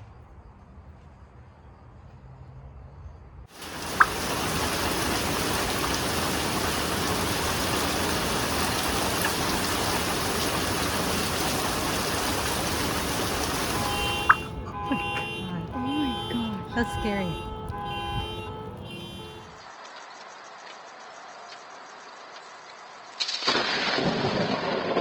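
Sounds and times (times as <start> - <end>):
heavy rain hissing: 3.5 - 19.6.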